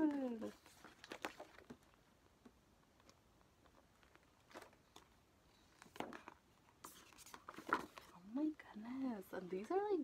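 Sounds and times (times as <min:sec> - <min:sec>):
paper posters rustling: 0:00.0 - 0:02.0, 0:02.9 - 0:08.5.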